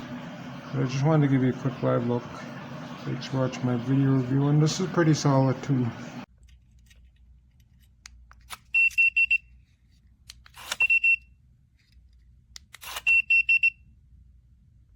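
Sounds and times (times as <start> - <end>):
keypad beeping: 10.8 - 11.2.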